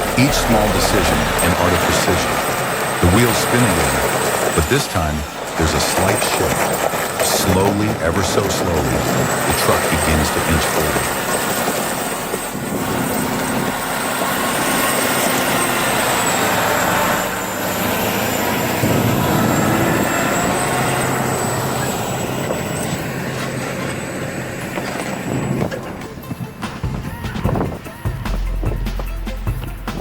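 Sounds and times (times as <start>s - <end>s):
diesel truck engine under load: 0.0s - 30.0s.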